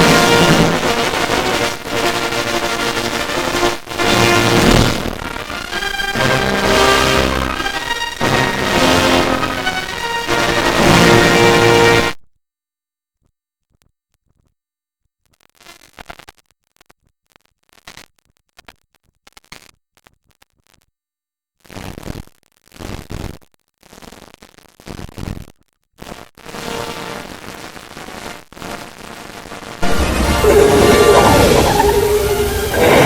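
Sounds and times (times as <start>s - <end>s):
harsh noise bursts: 0.0s - 1.7s, 29.8s - 33.0s.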